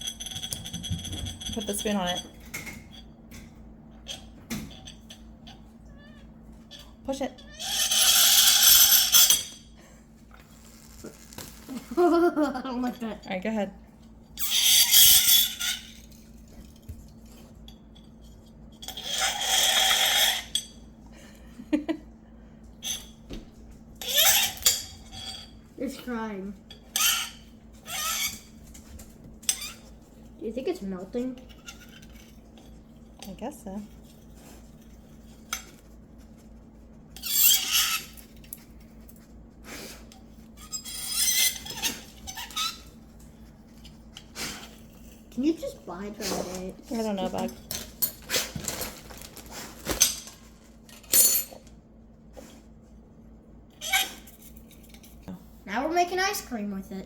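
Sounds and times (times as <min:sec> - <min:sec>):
spoon screeching on dry ice: 0:06.0 - 0:09.4, 0:14.4 - 0:15.9, 0:18.9 - 0:20.6, 0:24.0 - 0:24.6, 0:27.0 - 0:28.5, 0:37.2 - 0:38.2, 0:40.6 - 0:42.9.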